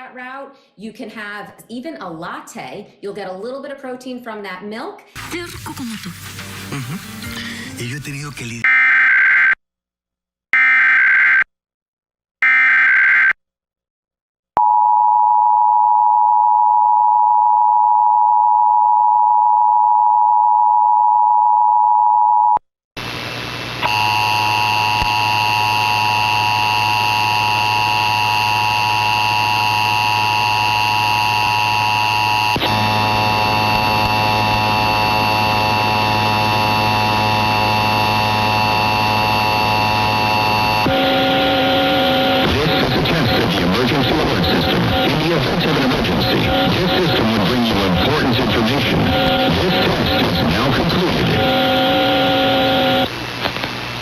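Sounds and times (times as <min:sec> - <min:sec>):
noisy multi-tone buzz with hum: 0:23.0 - 0:54.0
harsh digital data screech: 0:23.9 - 0:53.1.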